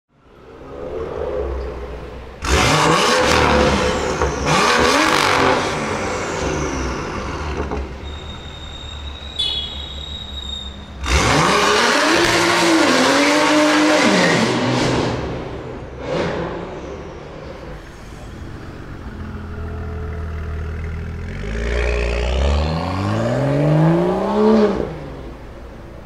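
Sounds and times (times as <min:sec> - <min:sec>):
car engine revving hard: 0:02.4 - 0:07.4, 0:11.0 - 0:15.5
steady high tone: 0:08.2 - 0:10.9.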